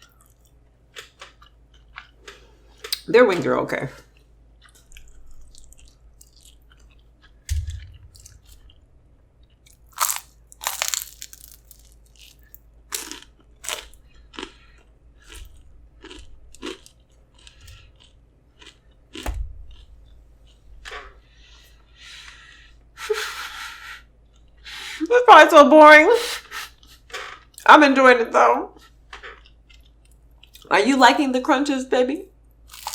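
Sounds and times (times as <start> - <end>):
chewing crunchy food: 0.0 - 3.1, 4.0 - 8.8, 9.4 - 20.6, 24.2 - 24.6, 28.8 - 30.7, 32.6 - 32.9
low thuds: 7.4 - 9.2.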